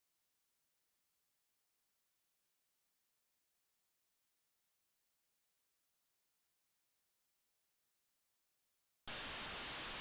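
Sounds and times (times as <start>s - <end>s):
faint steady hiss: 9.1s - 10.0s.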